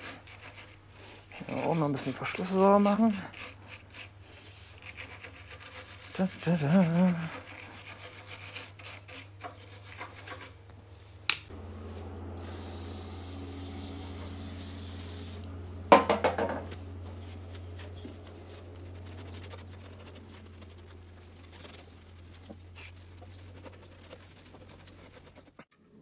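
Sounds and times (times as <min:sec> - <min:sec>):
scrubbing engine parts: 0:00.0 - 0:10.6, 0:11.5 - 0:25.7
steady hiss: 0:12.4 - 0:15.5.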